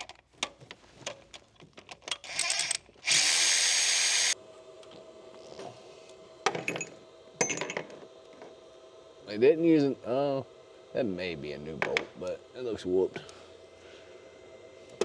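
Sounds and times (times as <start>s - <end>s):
power tool running: 2.2s - 4.4s.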